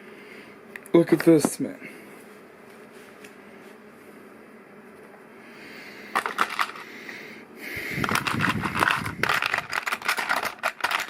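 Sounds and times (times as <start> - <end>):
plastic pieces clattering: 6.1 - 6.9, 7.9 - 11.0.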